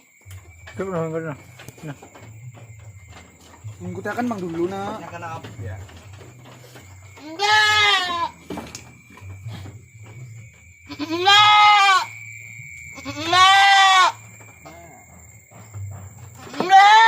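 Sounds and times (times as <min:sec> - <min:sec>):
goat bleating: 0:07.2 - 0:08.4, 0:10.9 - 0:12.1, 0:13.0 - 0:14.2, 0:16.4 - 0:17.0.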